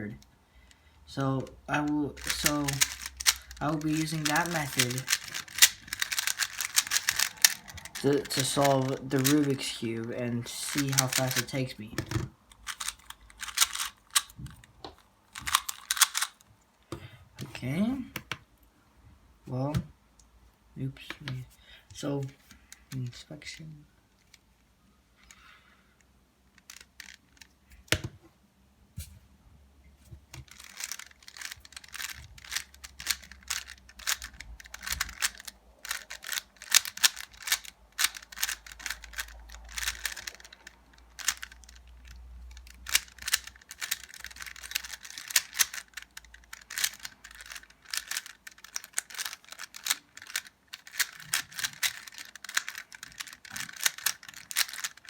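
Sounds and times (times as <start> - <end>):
puzzle cube clicking while turned: 1.4 - 16.4, 22.3 - 23.1, 26.5 - 28.1, 30.3 - 55.0.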